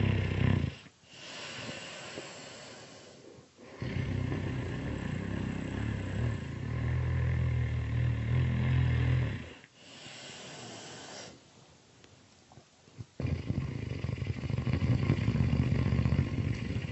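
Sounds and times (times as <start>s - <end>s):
loud rasping snore: 0.0s - 3.0s, 3.6s - 11.4s, 13.1s - 16.9s
breathy exhale: 9.8s - 11.4s.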